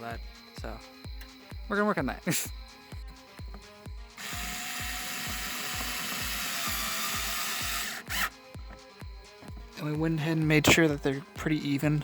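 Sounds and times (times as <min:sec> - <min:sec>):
background music with beat: 0:00.0 - 0:12.0
power drill running: 0:04.2 - 0:08.4.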